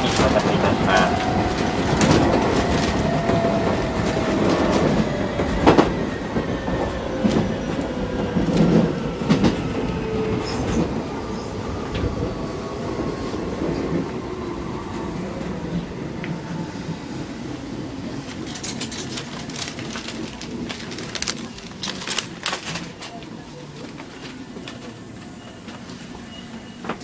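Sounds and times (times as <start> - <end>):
electric train motor whine: 0.0 - 12.3.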